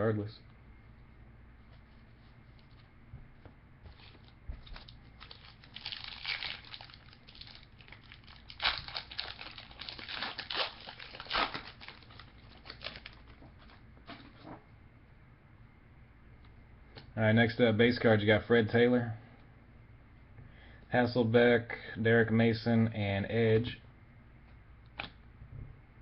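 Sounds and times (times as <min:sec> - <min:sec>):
plastic wrapper crinkling: 0:04.0 - 0:13.8.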